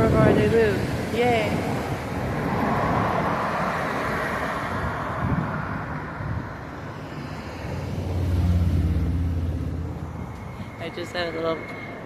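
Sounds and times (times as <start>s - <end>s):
vehicle passing with tyre noise: 0.0s - 12.0s
low engine hum: 4.7s - 12.0s.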